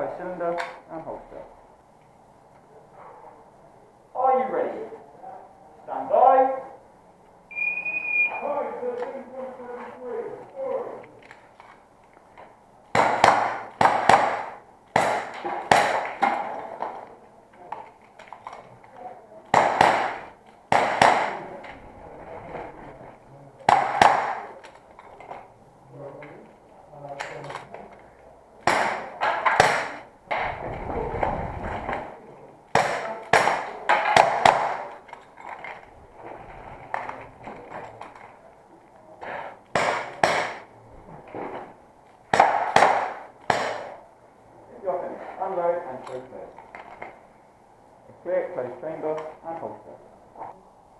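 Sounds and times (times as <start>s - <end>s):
airsoft revolver shots: 12.9s - 16.2s, 19.5s - 21.4s, 23.7s - 24.5s, 28.6s - 30.0s, 39.7s - 40.6s, 42.3s - 44.0s.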